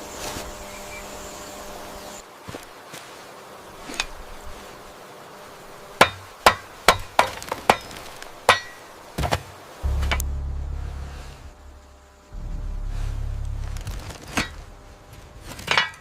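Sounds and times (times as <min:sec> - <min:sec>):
hammer blows: 0:09.8 - 0:15.0
low steady rumble: 0:09.8 - 0:15.4.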